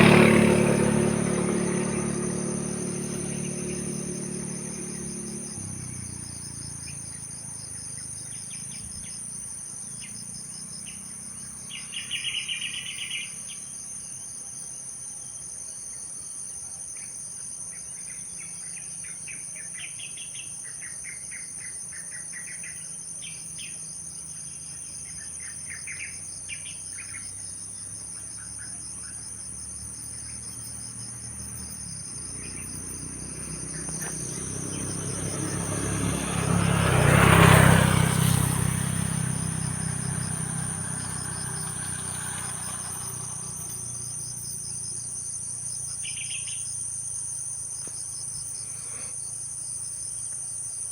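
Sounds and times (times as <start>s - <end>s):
insects trilling: 0.0s - 50.9s
birds chirping: 18.1s - 44.9s.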